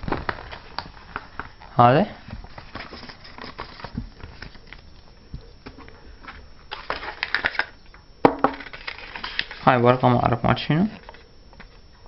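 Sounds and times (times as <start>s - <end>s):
paper and packaging rustling: 0.0s - 7.8s, 8.5s - 10.0s.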